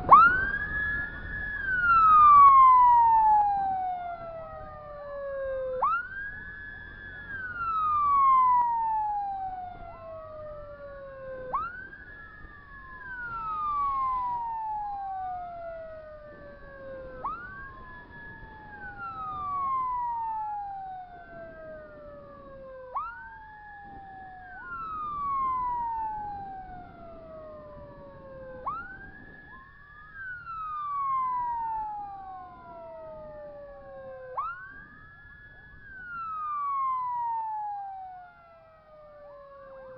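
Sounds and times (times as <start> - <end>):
emergency vehicle sirens wailing: 0.0 - 39.9.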